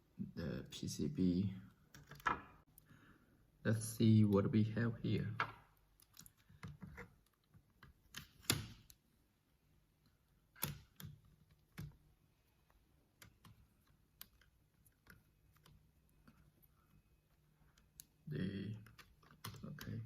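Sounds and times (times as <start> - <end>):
keyboard parts clicking and tapping: 5.3 - 9.0, 10.5 - 20.0.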